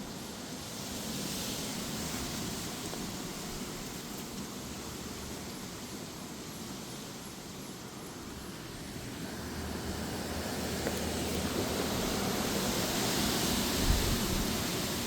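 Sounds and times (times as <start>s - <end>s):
rain: 0.0s - 15.0s
gusty wind: 7.8s - 15.0s.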